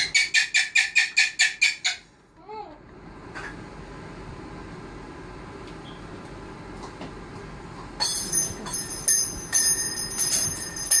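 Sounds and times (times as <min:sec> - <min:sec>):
parrots squawking: 0:00.0 - 0:02.1.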